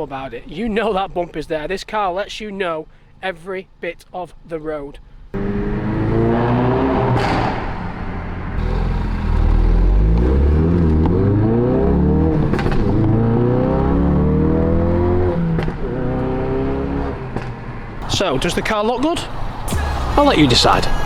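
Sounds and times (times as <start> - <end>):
car engine accelerating through gears: 5.4 - 18.2
sharp crack: 7.1 - 11.2, 19.6 - 21.0.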